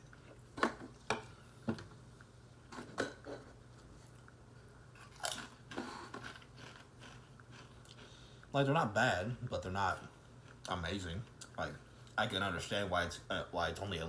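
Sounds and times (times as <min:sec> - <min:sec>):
potato crisps crunching: 0:05.0 - 0:08.0.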